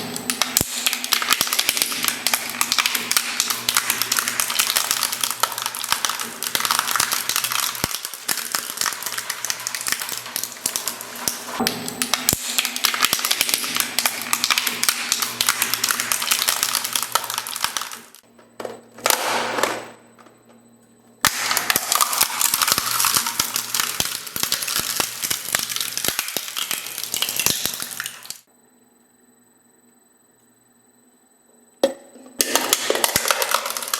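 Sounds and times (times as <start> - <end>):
shredder crushing material: 32.4 - 33.9.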